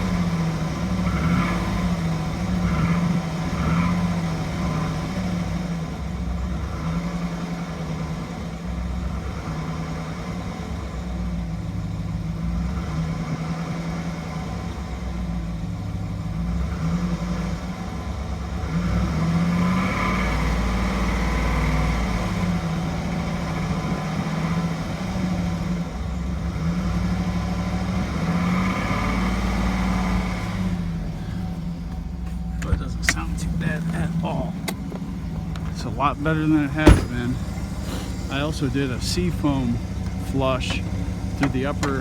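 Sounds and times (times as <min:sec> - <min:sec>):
engine idling: 0:00.0 - 0:42.0.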